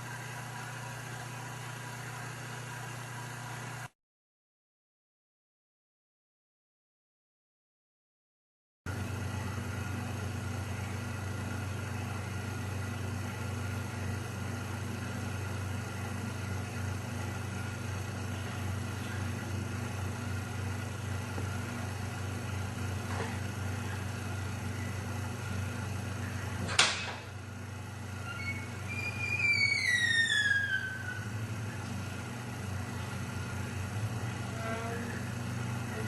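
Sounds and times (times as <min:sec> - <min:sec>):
steady low hum: 0:08.9 - 0:36.0.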